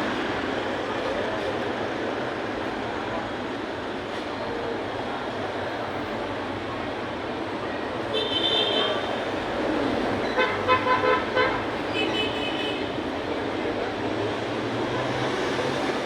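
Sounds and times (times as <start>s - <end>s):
street traffic noise: 0.0s - 16.0s
vehicle horns honking: 8.2s - 9.2s, 10.2s - 12.9s.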